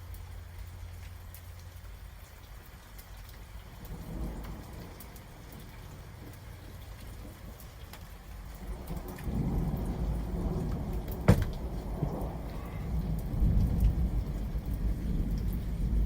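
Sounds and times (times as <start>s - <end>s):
rain: 0.0s - 16.0s
thunder rumbling: 3.6s - 16.0s
sharp thunder crack: 8.8s - 14.2s.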